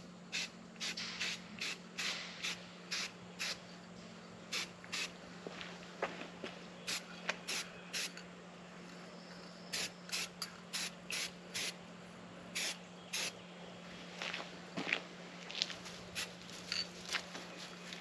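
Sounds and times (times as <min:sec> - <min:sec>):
spray paint can hissing: 0:00.3 - 0:03.6, 0:04.5 - 0:05.1, 0:06.9 - 0:08.2, 0:09.7 - 0:11.8, 0:12.6 - 0:13.3.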